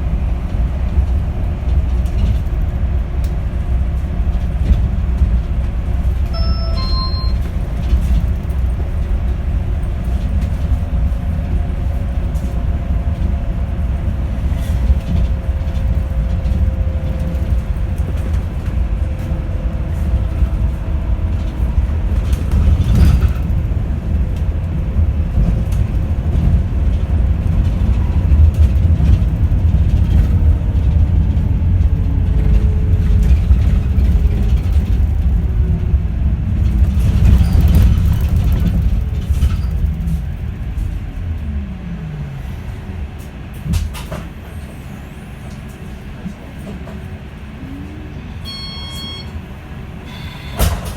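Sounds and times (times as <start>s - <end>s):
bus road rumble: 0.0s - 50.9s
two-tone electronic beep: 6.4s - 7.5s, 48.4s - 49.3s, 50.1s - 50.7s.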